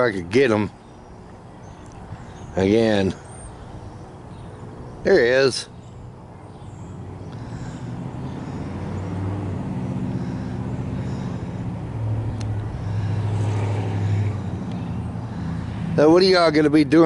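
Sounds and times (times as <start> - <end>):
low engine drone: 0.0 - 17.0.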